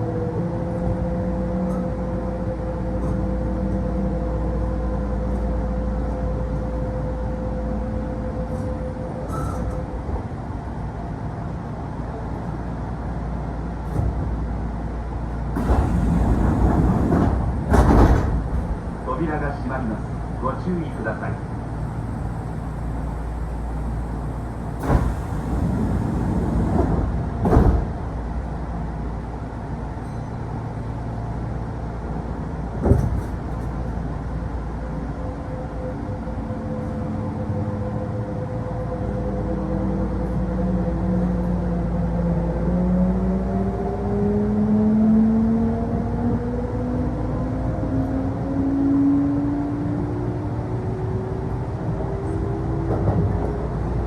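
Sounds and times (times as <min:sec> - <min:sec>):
low running rumble: 0:15.0 - 0:29.3
sliding doors thumping shut: 0:15.6 - 0:19.0, 0:23.9 - 0:28.2
train motors whining: 0:15.6 - 0:19.1, 0:21.2 - 0:28.2.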